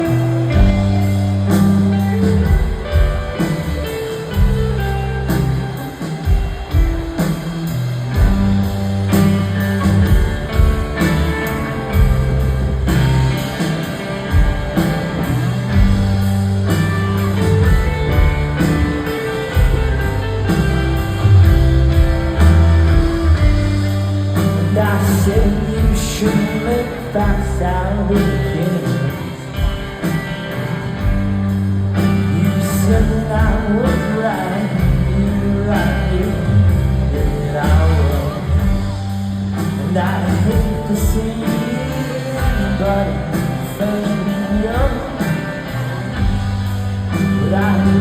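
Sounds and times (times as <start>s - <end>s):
plucked guitar: 0.0s - 48.0s
bass notes: 7.7s - 26.0s.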